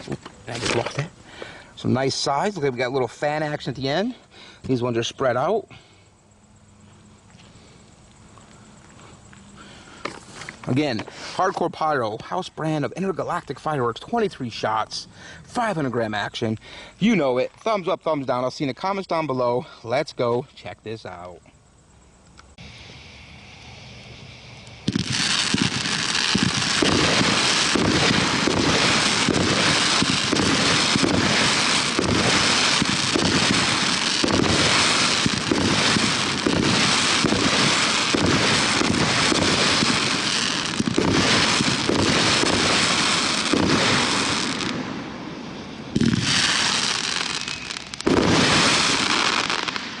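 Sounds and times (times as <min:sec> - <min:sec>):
dense firework crackling: 0:00.0 - 0:05.6, 0:22.6 - 0:50.0
firework hiss: 0:07.4 - 0:11.6, 0:22.5 - 0:50.0
loud firework volleys: 0:22.6 - 0:50.0
rapid firework shots: 0:24.8 - 0:45.0, 0:46.0 - 0:50.0.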